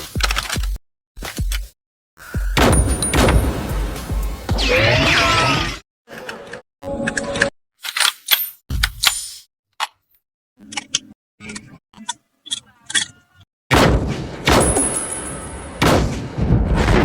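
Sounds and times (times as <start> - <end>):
loud sci-fi firing blast: 2.6 - 4.1.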